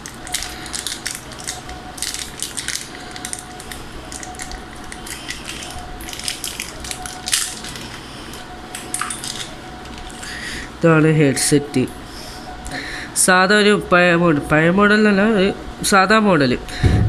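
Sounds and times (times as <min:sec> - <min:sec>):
plastic packaging crinkling: 0:00.0 - 0:10.4.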